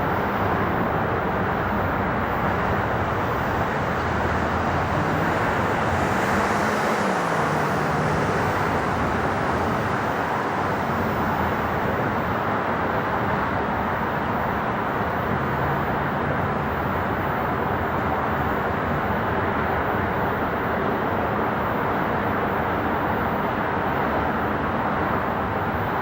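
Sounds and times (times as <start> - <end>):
jet airliner roar: 0.0 - 17.5.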